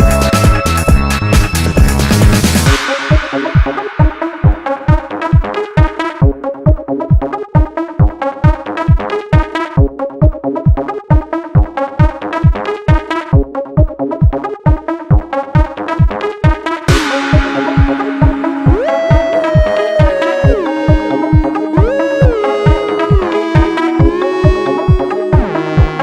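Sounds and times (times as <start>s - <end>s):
synth chords: 0.0s - 8.6s, 16.8s - 26.0s
four-on-the-floor kick drum: 0.0s - 26.0s
rising noise sweep: 16.9s - 25.8s.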